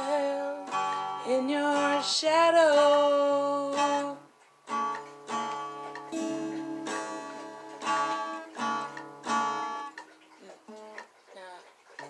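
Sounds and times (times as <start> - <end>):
person singing: 0.0 - 4.2
acoustic guitar strumming: 0.0 - 11.1.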